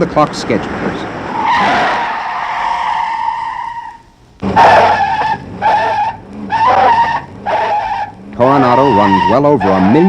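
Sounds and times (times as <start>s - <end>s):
tyres squealing: 1.3s - 10.0s.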